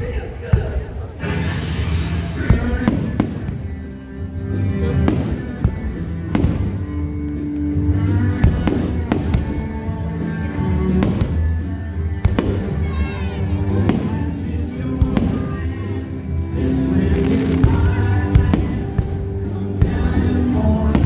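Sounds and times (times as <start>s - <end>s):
fireworks bursting: 1.4s - 3.9s, 4.7s - 7.4s, 8.3s - 9.8s, 11.0s - 20.1s.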